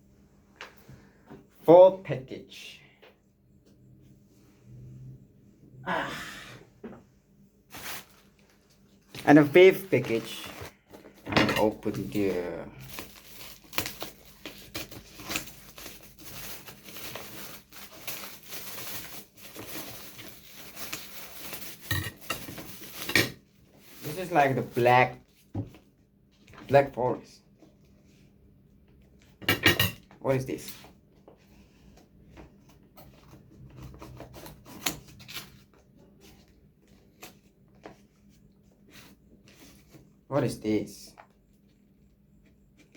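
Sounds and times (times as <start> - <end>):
packaging being torn open: 12.8 - 21.8.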